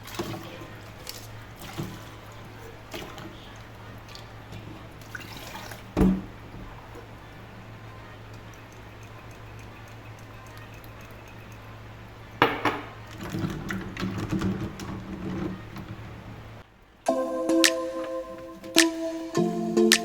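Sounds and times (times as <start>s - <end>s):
music: 17.1s - 20.0s.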